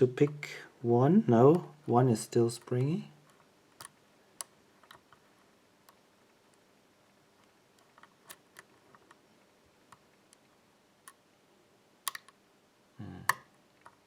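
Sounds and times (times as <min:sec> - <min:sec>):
lock pick clicking: 0:12.0 - 0:12.4.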